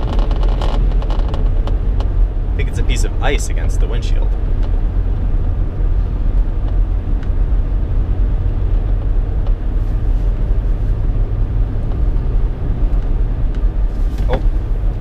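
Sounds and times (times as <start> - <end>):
car road and engine noise: 0.0 - 15.0.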